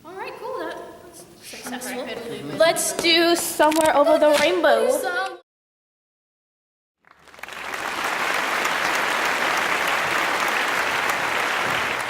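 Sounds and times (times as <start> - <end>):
group applauding: 7.0 - 12.0.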